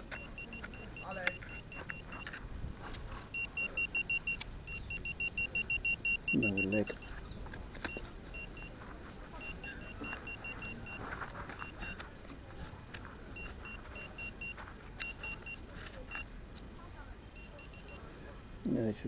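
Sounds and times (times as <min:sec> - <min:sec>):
metal detector beeping: 0:00.0 - 0:02.4, 0:03.3 - 0:12.0, 0:13.4 - 0:16.3, 0:17.4 - 0:18.1.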